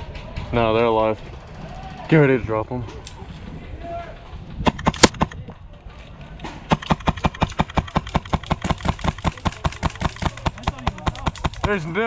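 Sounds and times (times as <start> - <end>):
airsoft rifle rapid firing: 4.7 - 5.4, 6.7 - 12.0.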